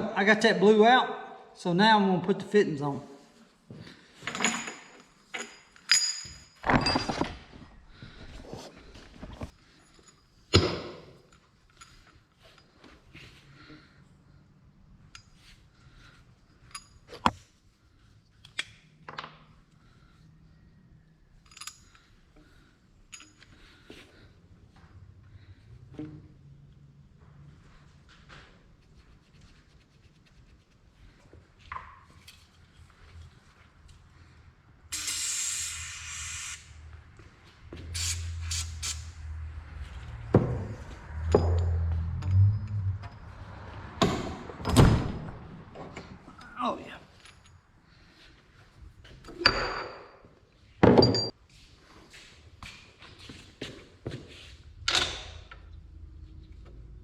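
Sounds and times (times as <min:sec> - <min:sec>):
metallic clinks of tools: 0:04.2 - 0:07.2, 0:21.4 - 0:22.2, 0:23.1 - 0:23.8, 0:41.3 - 0:43.4
spray-like hiss: 0:34.9 - 0:36.9, 0:37.9 - 0:39.2.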